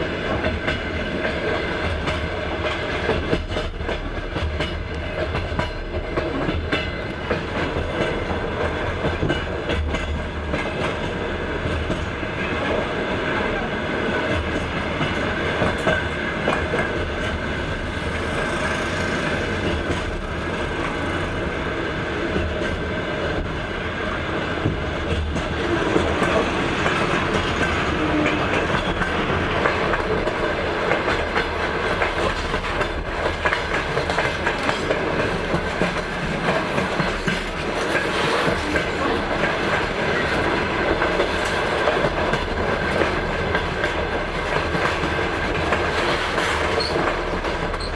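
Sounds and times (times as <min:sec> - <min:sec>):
train wheels clattering over rail joints: 0:00.0 - 0:13.2, 0:14.0 - 0:47.9.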